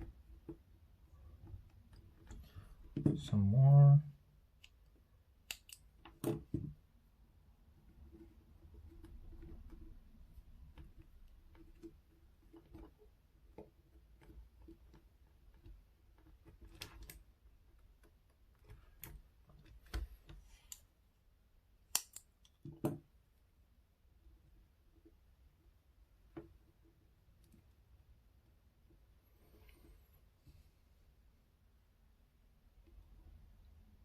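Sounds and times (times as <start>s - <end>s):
scissors snipping rubber: 5.5s - 5.8s.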